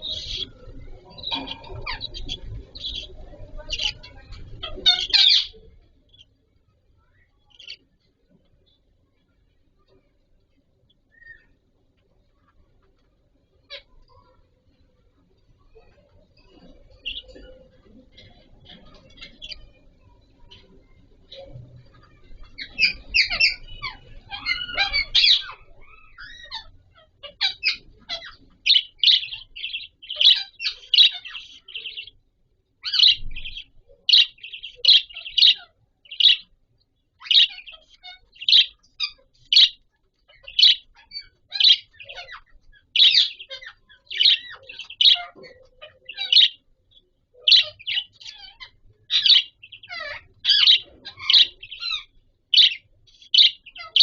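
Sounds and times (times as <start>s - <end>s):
budgerigars chirping: 0.0s - 6.3s, 7.5s - 7.8s, 16.4s - 19.8s, 22.4s - 32.2s, 32.8s - 36.6s, 37.2s - 54.0s.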